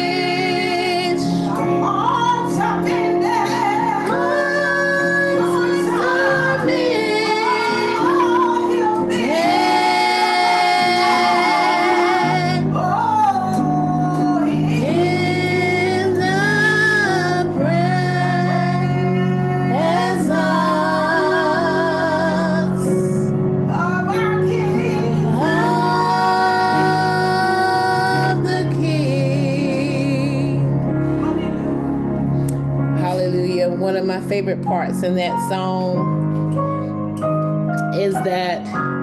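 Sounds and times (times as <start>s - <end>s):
woman singing gospel melody: 0.0s - 30.9s
sustained accompanying chords: 0.0s - 39.0s.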